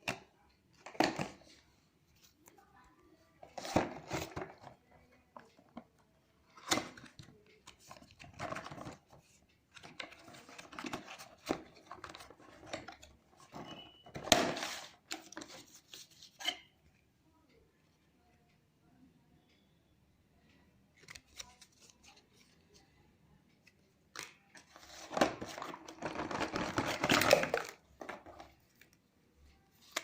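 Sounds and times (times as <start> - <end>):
packaging rustling and crinkling: 24.7 - 28.5.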